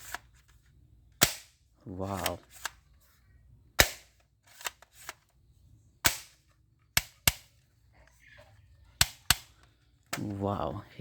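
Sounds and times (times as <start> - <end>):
toy gun shots: 1.2 - 1.5, 3.8 - 4.6.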